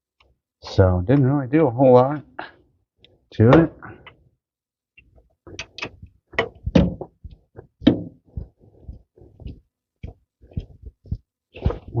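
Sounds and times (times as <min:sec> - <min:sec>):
hand tools knocking and scraping: 0:05.5 - 0:08.2.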